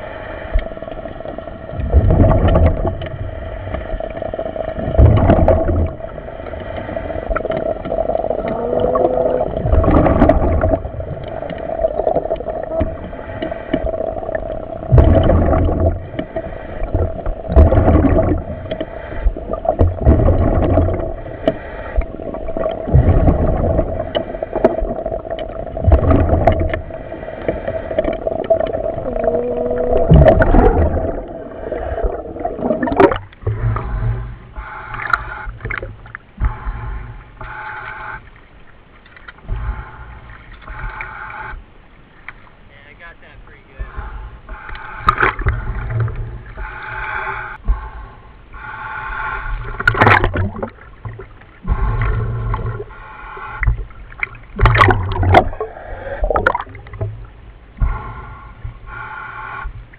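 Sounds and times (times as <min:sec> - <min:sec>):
diver breathing: 0:00.0 - 0:01.7, 0:05.5 - 0:38.4, 0:39.4 - 0:41.7, 0:42.9 - 0:57.0, 0:57.7 - 0:59.9
steady hum: 0:00.0 - 0:59.9
exhaust bubbles gurgling: 0:00.6 - 0:36.6, 0:49.3 - 0:59.1.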